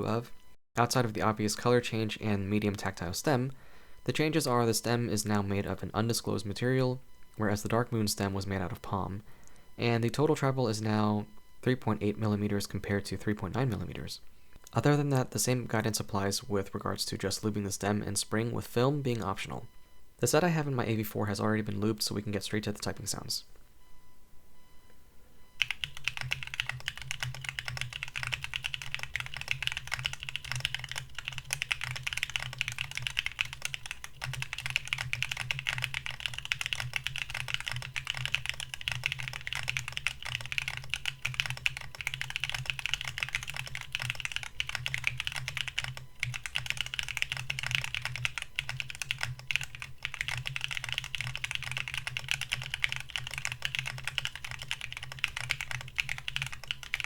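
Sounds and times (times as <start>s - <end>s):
mechanical keyboard typing: 25.6s - 57.0s.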